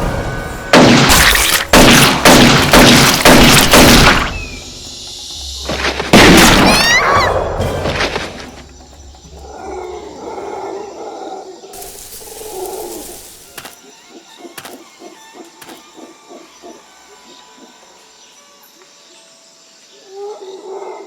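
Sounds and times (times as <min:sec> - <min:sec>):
background music: 0:00.0 - 0:20.3
falling chirps: 0:01.1 - 0:11.0, 0:11.7 - 0:18.0.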